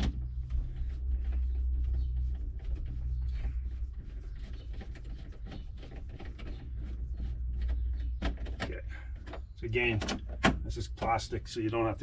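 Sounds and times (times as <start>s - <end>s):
steady low hum: 0.0s - 8.1s.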